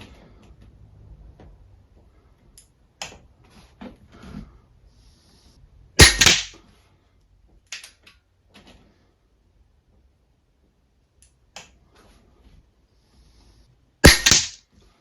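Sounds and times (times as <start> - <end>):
air rifle shot: 6.0 - 6.6, 14.0 - 14.6.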